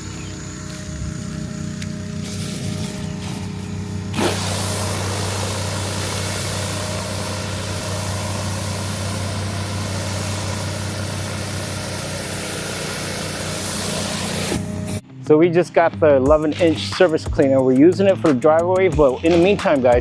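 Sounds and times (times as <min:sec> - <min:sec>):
high-pressure water spray hissing: 0:00.0 - 0:15.0
pressure washer motor hum: 0:00.0 - 0:15.0.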